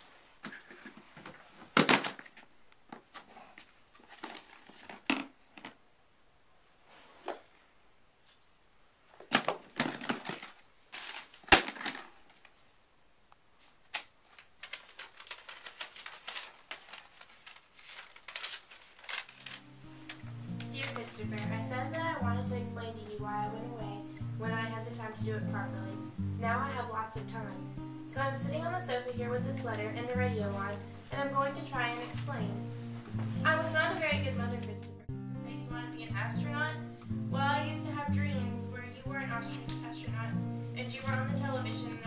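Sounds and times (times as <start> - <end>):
paper rustling and crinkling: 0.0 - 5.8, 9.1 - 12.8, 13.6 - 22.0, 29.5 - 34.9, 40.8 - 42.0
envelopes tearing: 9.3 - 12.6, 13.7 - 21.2.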